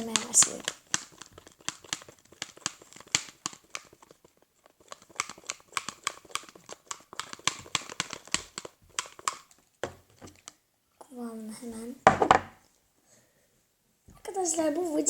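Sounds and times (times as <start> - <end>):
slime stirred wet clicking: 0.0 - 10.6.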